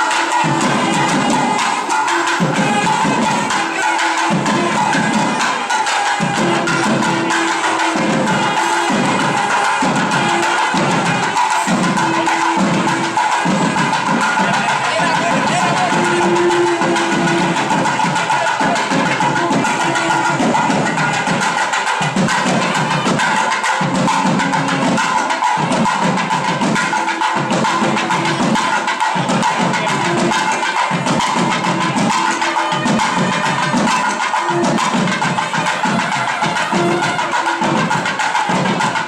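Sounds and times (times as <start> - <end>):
rapid steady drumming: 0.0 - 39.0
held high tones: 0.1 - 21.0.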